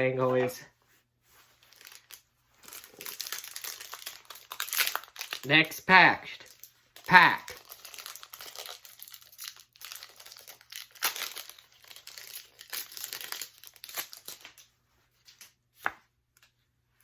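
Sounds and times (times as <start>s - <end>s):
foil wrapper tearing and crinkling: 1.6s - 5.5s, 6.4s - 14.7s.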